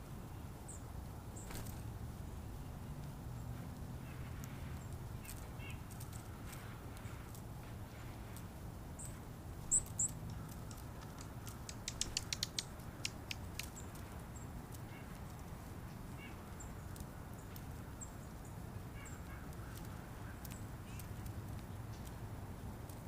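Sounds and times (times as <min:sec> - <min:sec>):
birds chirping: 0:00.2 - 0:22.2
sharp pecking taps: 0:10.2 - 0:13.8.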